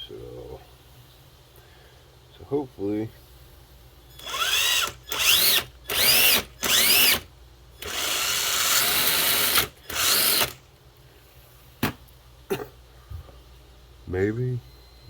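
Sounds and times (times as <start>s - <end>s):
electric motor and gears whining: 4.2s - 7.2s, 7.8s - 10.6s.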